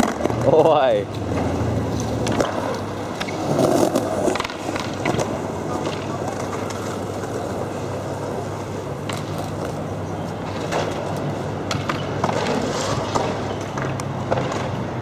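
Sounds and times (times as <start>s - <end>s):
skateboard clacks: 0.0s - 15.0s
skateboard wheels rolling: 0.0s - 15.0s.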